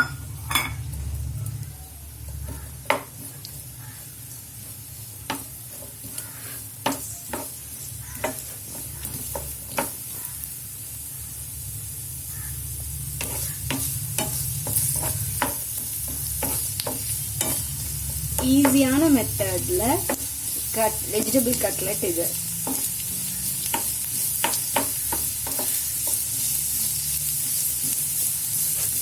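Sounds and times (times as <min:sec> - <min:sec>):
onions sizzling in hot oil: 0:00.0 - 0:29.0
spoon scraping a pan: 0:04.7 - 0:10.3, 0:13.2 - 0:19.2.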